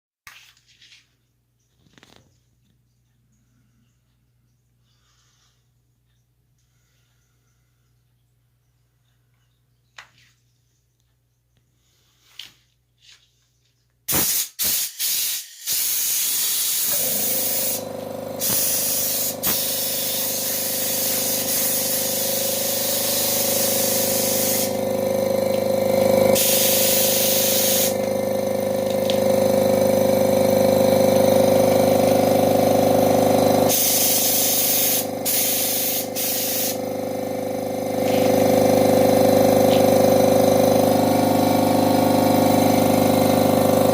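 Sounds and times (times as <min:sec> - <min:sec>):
hissing air: 0:14.1 - 0:24.9, 0:26.3 - 0:28.1, 0:33.7 - 0:36.9
air compressor motor hum: 0:14.1 - 0:43.9.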